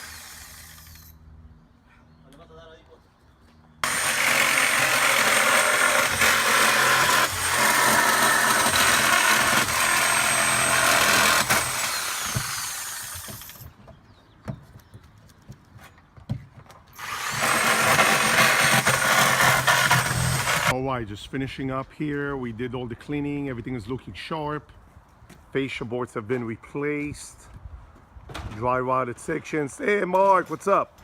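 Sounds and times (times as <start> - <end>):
power tool whining: 3.8 - 13.7, 17.0 - 20.7.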